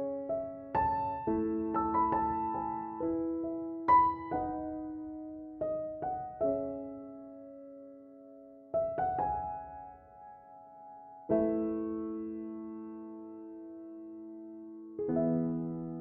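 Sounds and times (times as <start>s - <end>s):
gentle piano chords: 0.0s - 16.0s.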